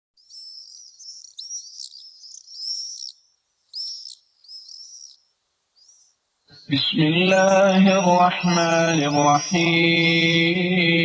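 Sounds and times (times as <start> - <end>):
high-pitched bird chirping: 0.2 - 5.2, 7.8 - 10.6.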